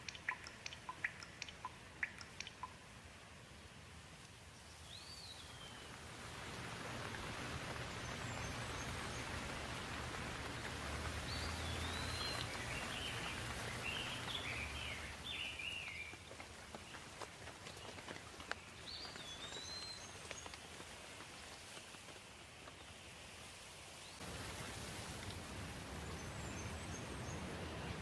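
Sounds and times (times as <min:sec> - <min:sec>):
single drops ticking: 0:00.0 - 0:02.8
songbird singing: 0:00.0 - 0:02.9, 0:04.4 - 0:21.3, 0:25.6 - 0:28.0
steady rain falling: 0:00.0 - 0:28.0.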